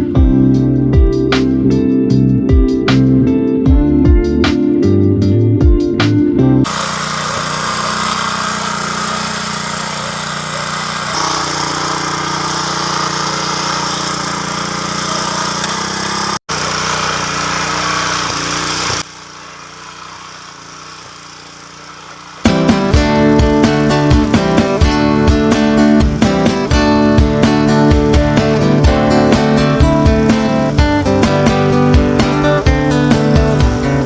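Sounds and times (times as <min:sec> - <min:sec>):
rotary tiller engine running: 0:06.6 - 0:34.0.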